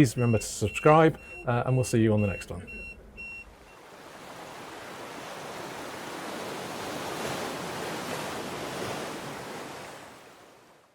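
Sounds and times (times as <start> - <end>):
sea surf washing: 3.8 - 10.8.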